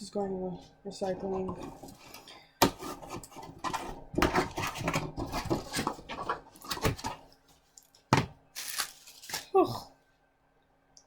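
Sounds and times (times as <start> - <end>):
food packaging crinkling: 4.9 - 9.6.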